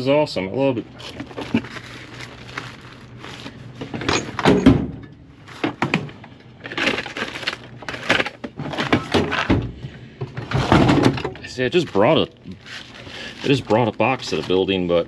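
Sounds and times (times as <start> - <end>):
hands rummaging through tools: 0.9 - 4.8, 5.4 - 9.6, 10.3 - 15.0.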